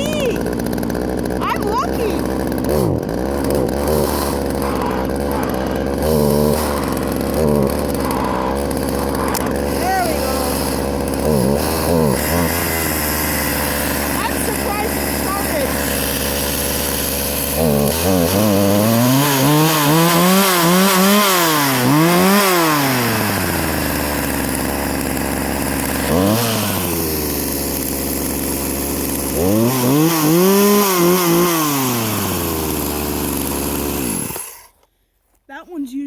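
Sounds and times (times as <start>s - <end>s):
chainsaw idling and revving: 0.0s - 35.0s.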